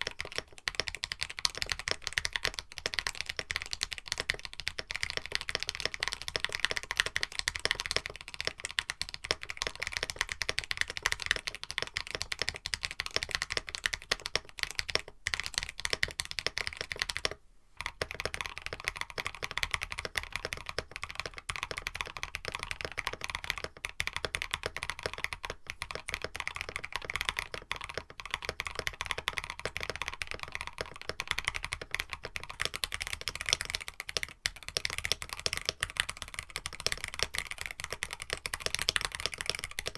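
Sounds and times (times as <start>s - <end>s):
fast mechanical keyboard typing: 0.0s - 39.9s.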